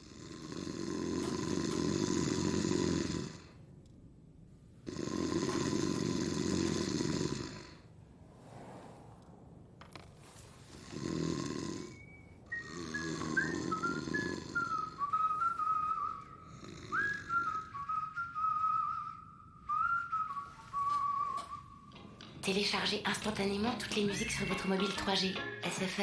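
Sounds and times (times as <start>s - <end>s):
person snoring: 0.0s - 3.6s, 4.8s - 7.9s, 10.7s - 12.0s, 12.6s - 15.2s, 16.4s - 17.7s
whistled tune: 11.9s - 22.2s.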